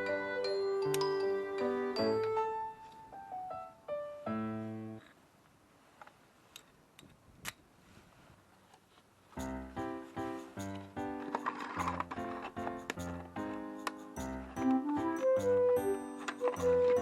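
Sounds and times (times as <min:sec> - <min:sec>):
piano-like music notes: 0:00.0 - 0:05.0, 0:09.4 - 0:17.0.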